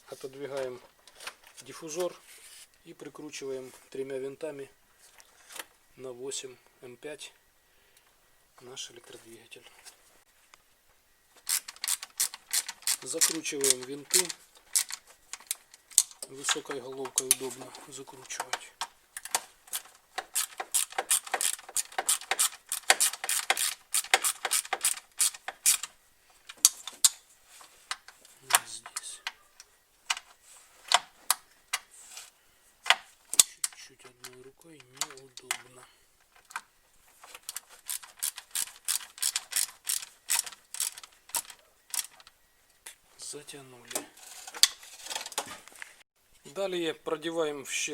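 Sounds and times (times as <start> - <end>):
socket ratchet clicking: 11.5 - 16.2, 19.2 - 25.9, 37.5 - 42.3.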